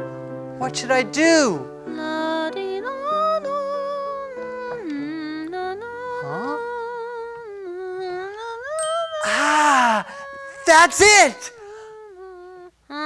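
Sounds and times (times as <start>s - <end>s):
person humming a melody: 8.8s - 10.5s.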